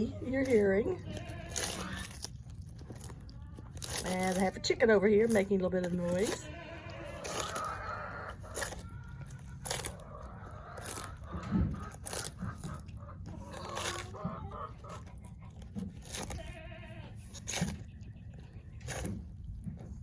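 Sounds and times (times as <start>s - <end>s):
chicken clucking: 0.0s - 16.4s
tortoise crunching lettuce: 0.0s - 20.0s.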